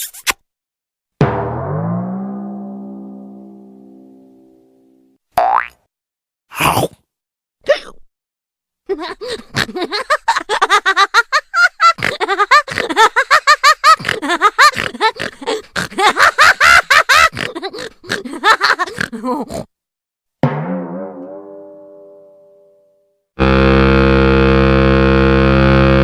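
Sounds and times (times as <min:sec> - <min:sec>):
plucked note ringing: 0:01.2 - 0:05.2, 0:20.4 - 0:23.9.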